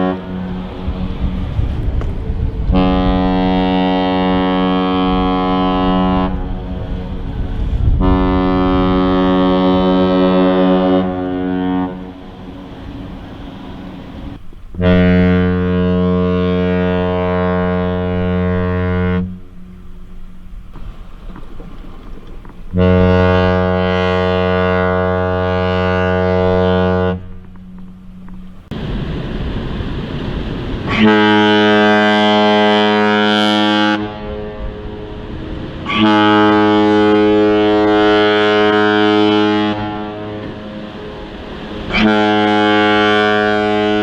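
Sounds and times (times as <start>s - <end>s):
brighter horn blast: 0.0s - 2.0s, 2.6s - 19.9s, 22.7s - 27.8s, 30.9s - 44.0s
rushing noise: 0.0s - 15.9s, 27.1s - 44.0s
deep ship's horn blasts: 0.0s - 21.7s, 22.6s - 44.0s.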